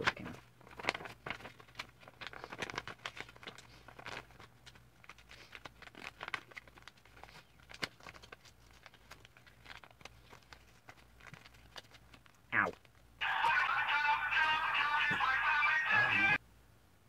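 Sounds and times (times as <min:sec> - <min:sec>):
paper being folded and creased: 0:00.0 - 0:13.0.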